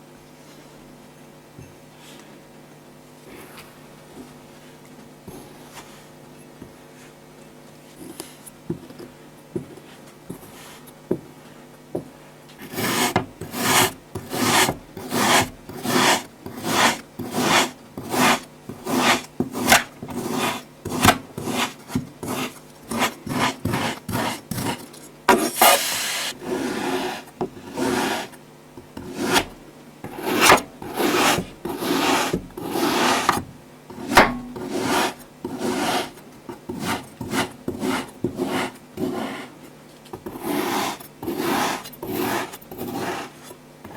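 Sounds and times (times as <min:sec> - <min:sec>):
sand rasping under scraping: 0:25.3 - 0:28.3, 0:30.1 - 0:33.3, 0:34.0 - 0:36.2.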